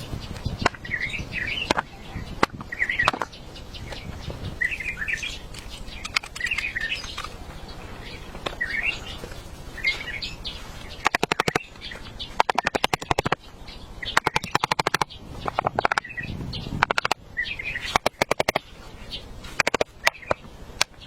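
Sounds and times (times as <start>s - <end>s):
small birds chirping: 0.0s - 21.0s
rapid tapping: 11.0s - 11.7s, 12.3s - 13.4s, 14.2s - 16.1s, 16.8s - 17.2s, 17.9s - 18.6s.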